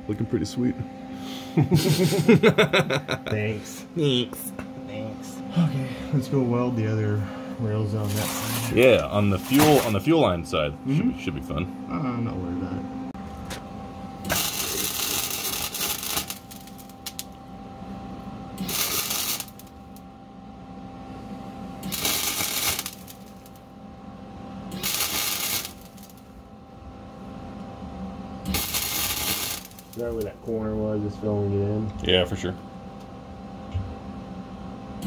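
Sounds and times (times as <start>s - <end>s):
steady hum: 0.0s - 35.0s
welding arc crackling: 8.0s - 10.2s, 14.2s - 17.4s, 18.6s - 20.1s, 21.8s - 23.7s, 24.7s - 26.4s, 28.4s - 30.5s.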